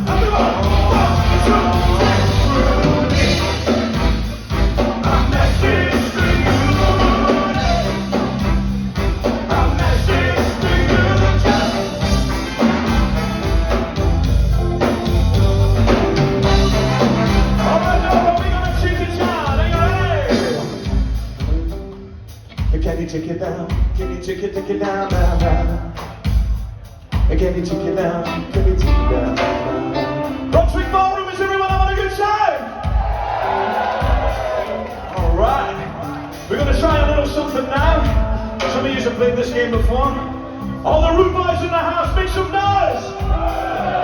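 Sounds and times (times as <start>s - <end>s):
person singing lead vocal: 0.0s - 3.8s, 5.0s - 8.3s, 9.3s - 12.3s, 16.6s - 20.8s, 27.3s - 32.4s, 35.2s - 41.6s
live ska band playing: 0.0s - 44.0s.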